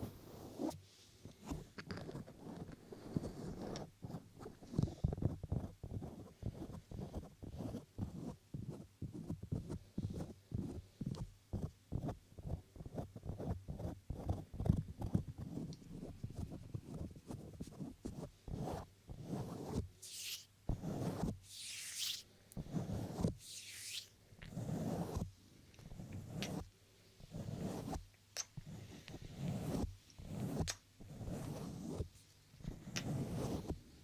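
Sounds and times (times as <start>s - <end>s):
hands rubbing against microphone: 14.2s - 22.2s, 22.8s - 25.2s, 25.9s - 26.7s, 27.4s - 33.8s.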